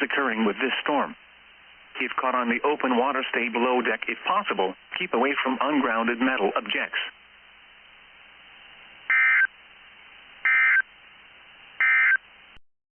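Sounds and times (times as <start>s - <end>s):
digital data tone bursts: 9.1s - 9.5s, 10.4s - 10.9s, 11.8s - 12.2s.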